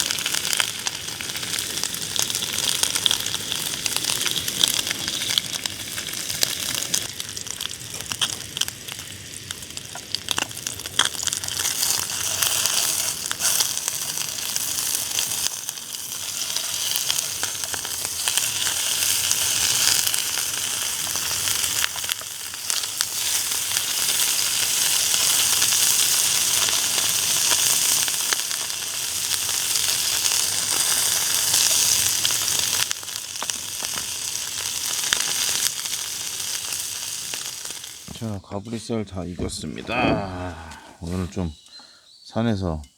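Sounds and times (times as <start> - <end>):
fat popping and crackling: 0.0 - 25.7
pork sizzling: 0.0 - 38.4.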